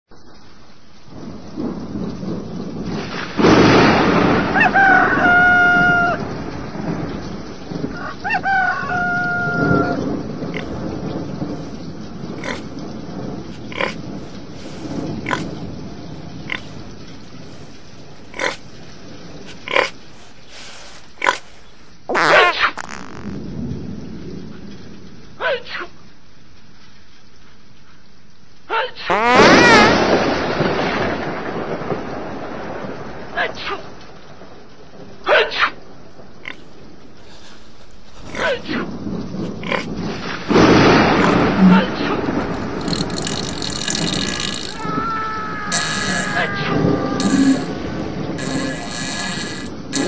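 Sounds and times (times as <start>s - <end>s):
rain falling: 0.1s - 50.0s
steady hiss: 0.1s - 50.0s
thunder rolling: 1.1s - 21.9s, 22.8s - 25.1s, 29.4s - 50.0s
rooster crowing: 4.5s - 6.4s, 7.9s - 10.1s, 44.4s - 48.0s
pig grunting: 9.8s - 10.8s, 12.4s - 12.8s, 13.6s - 15.6s, 16.2s - 18.7s, 19.5s - 21.6s, 36.4s - 50.0s
pig squealing: 18.3s - 18.6s, 19.5s - 23.4s, 29.1s - 30.0s, 38.2s - 38.8s, 40.9s - 50.0s.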